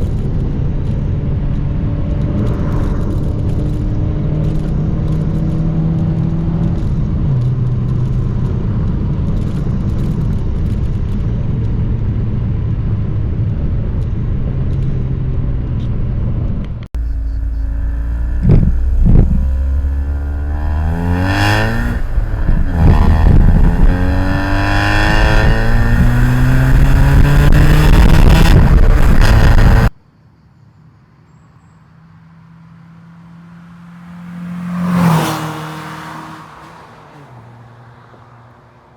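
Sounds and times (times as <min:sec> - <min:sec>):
car engine with raspy exhaust: 0:00.0 - 0:29.9.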